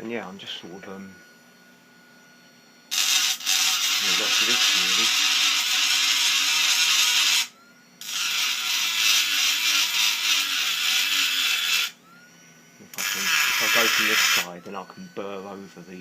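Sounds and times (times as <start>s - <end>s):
faint rising motor whine: 0.0s - 5.7s, 6.4s - 8.1s, 11.9s - 16.0s.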